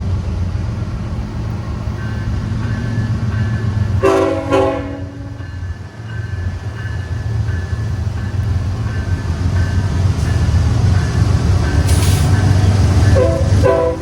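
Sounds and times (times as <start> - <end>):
train low rumble: 0.0 - 14.0
train air horn blasts: 4.0 - 5.4, 13.0 - 14.0.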